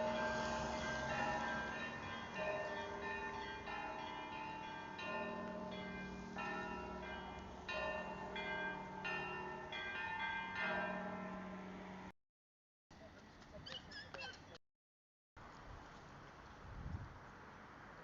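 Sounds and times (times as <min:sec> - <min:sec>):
deep bell: 0:00.0 - 0:12.1
small church bells ringing: 0:00.0 - 0:12.1.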